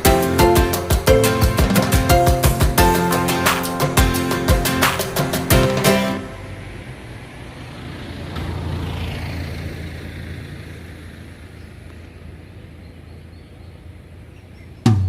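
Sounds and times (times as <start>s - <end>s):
low outdoor rumbling: 4.2s - 15.0s.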